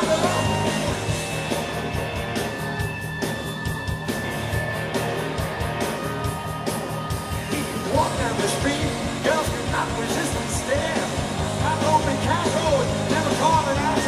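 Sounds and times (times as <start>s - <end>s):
person singing: 0.0s - 1.5s, 7.5s - 14.0s
rock band playing: 0.0s - 14.0s.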